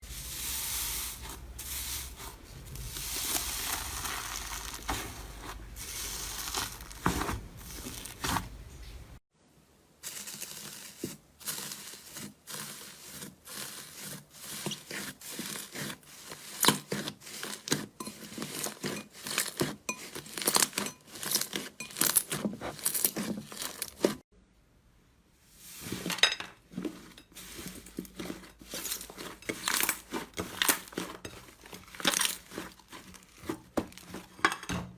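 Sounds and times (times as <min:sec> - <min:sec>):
slime crackling and popping: 0:06.1 - 0:08.4.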